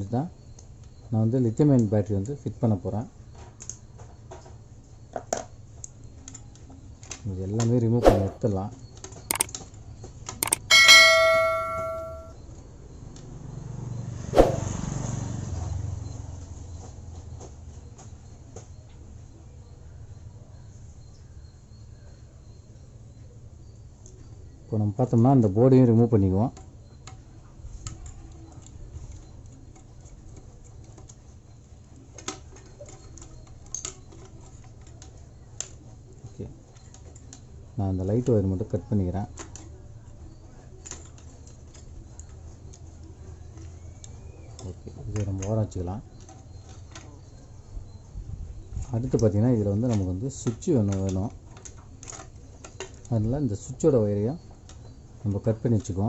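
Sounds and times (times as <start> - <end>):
sharp clicks: 9.3 - 9.5, 10.4 - 12.3
metal object clanging: 10.4 - 12.3.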